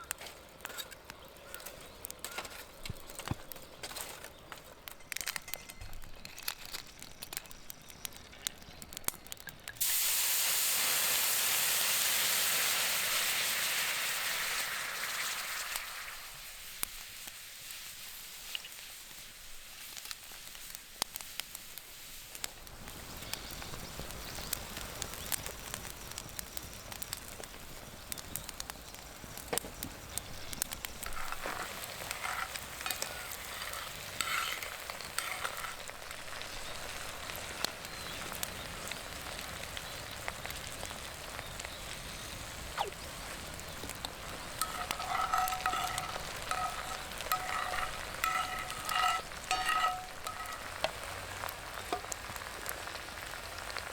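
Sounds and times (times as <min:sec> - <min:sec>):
wood fire crackling and popping: 0:00.0 - 0:53.9
food sizzling in frying pan: 0:06.0 - 0:53.9.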